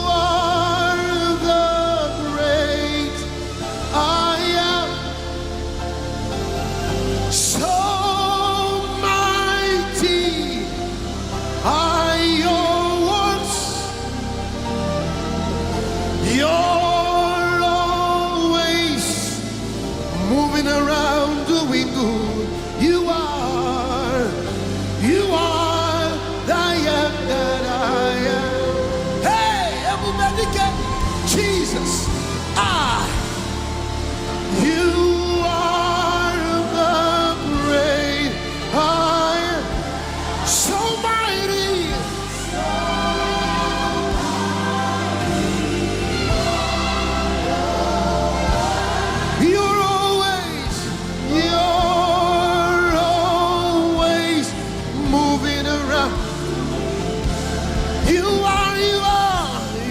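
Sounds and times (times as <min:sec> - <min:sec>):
choir singing: 0:00.0 - 0:59.9
sustained band backing: 0:00.0 - 0:59.9.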